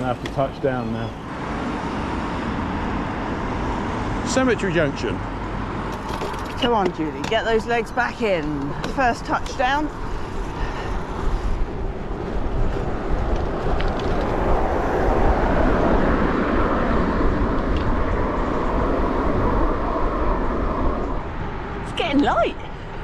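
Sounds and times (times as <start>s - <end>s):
road traffic noise: 0.0s - 23.0s
wind rumbling on microphone: 5.8s - 23.0s.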